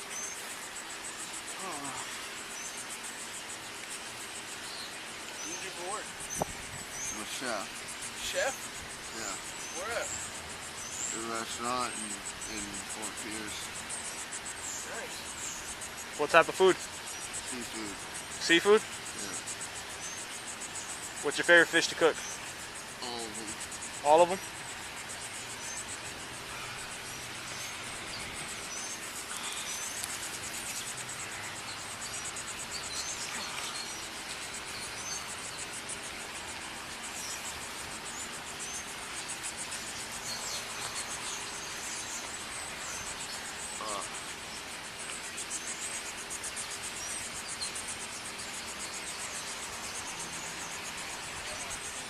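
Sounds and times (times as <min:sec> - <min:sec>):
background hiss: 0:00.0 - 0:52.0
insects trilling: 0:00.0 - 0:52.0.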